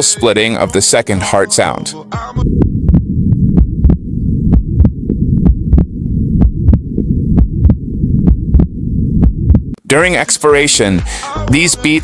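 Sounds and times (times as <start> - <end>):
continuous low rumble: 2.4 - 9.8
heartbeat clicks: 2.4 - 9.8.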